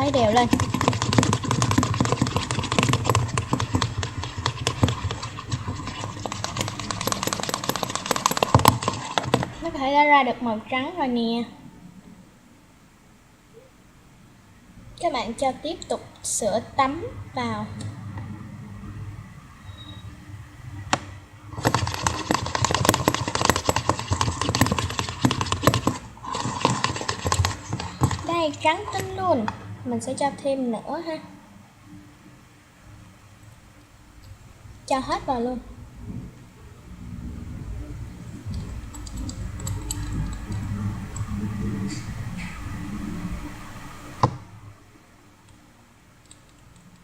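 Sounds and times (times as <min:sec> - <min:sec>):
stirrer clicking against container: 0:00.0 - 0:09.7, 0:21.6 - 0:29.1, 0:38.6 - 0:41.3
low steady hum: 0:00.0 - 0:47.0.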